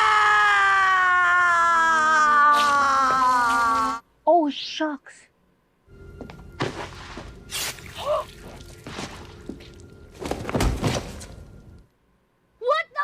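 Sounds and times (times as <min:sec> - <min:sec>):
dull thuds and sharp knocks: 0:10.2 - 0:11.3.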